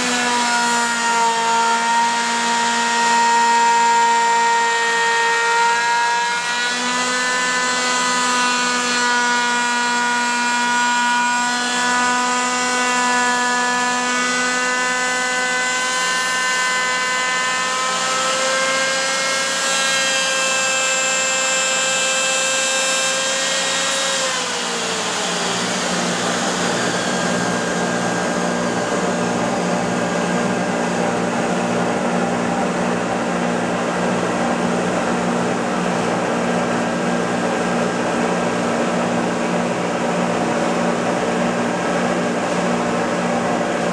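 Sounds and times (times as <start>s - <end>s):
router spindle whine: 0.0s - 43.9s
low motor hum: 24.4s - 43.9s.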